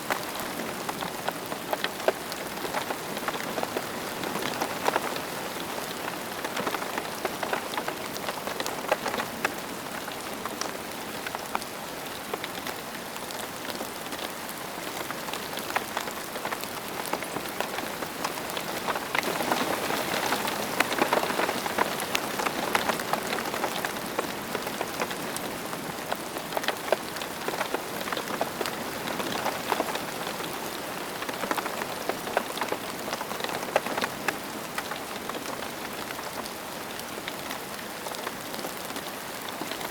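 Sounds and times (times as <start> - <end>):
rain falling: 0.0 - 39.9
raindrops ticking: 15.2 - 36.4.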